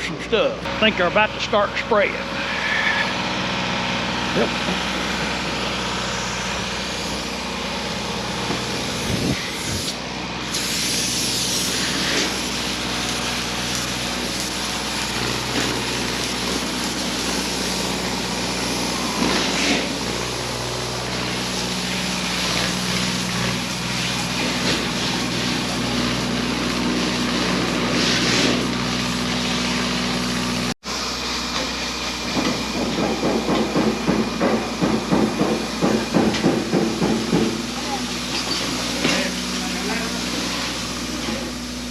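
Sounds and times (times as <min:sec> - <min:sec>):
engine humming: 0:00.0 - 0:32.8
spray gun hissing: 0:04.7 - 0:41.9.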